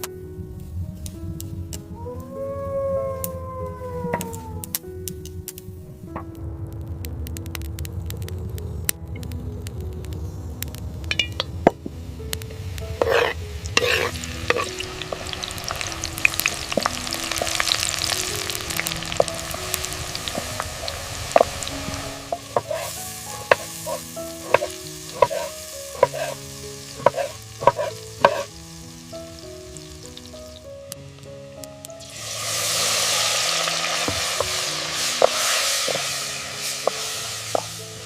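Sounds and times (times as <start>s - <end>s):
soft background music: 0.0s - 38.0s
food sizzling in a pan: 11.1s - 30.7s, 31.5s - 38.0s.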